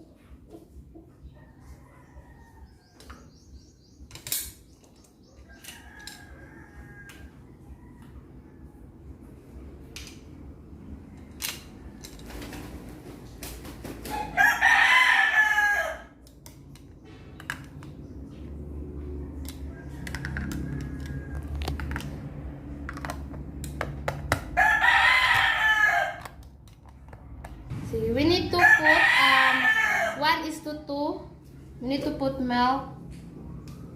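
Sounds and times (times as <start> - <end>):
rooster crowing: 1.4 - 3.0, 5.4 - 9.1, 14.1 - 16.2, 19.0 - 22.1, 24.4 - 26.4, 28.5 - 30.3.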